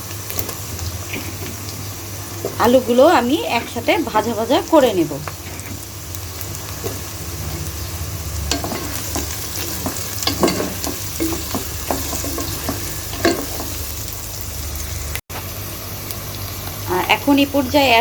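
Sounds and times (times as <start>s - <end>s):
potatoes and onions sizzling in oil: 0.0s - 18.0s
utensil scraping and knocking on pan: 8.4s - 13.8s.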